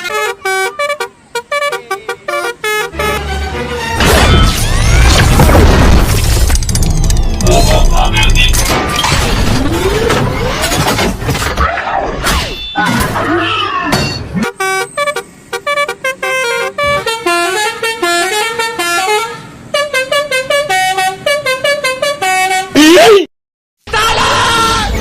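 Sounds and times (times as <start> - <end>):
multi-tone air horn tune: 0.0 - 3.9, 14.4 - 22.8.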